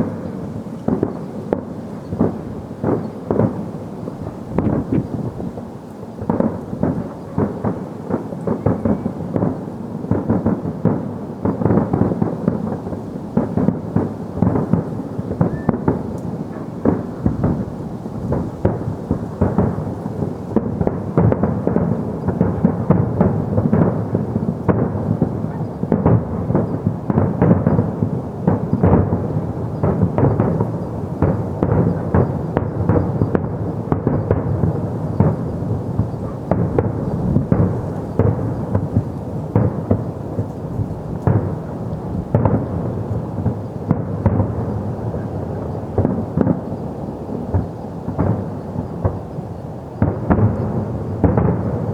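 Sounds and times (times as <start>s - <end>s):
fireworks barrage: 0.0s - 51.9s.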